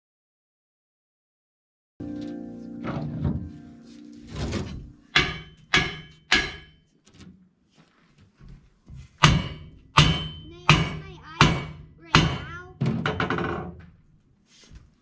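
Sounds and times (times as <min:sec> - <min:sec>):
metal-on-metal strikes ringing: 0:04.4 - 0:06.8, 0:09.2 - 0:13.2.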